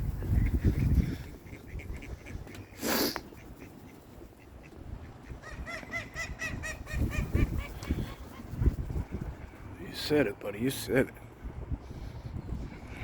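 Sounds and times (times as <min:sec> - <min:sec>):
ducks quacking: 0:00.2 - 0:09.6.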